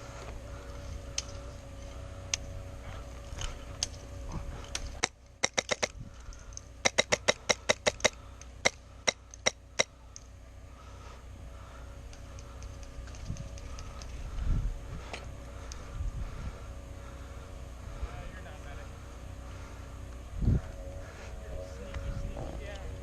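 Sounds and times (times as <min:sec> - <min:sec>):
airsoft guns firing: 0:05.0 - 0:06.0, 0:06.8 - 0:09.9.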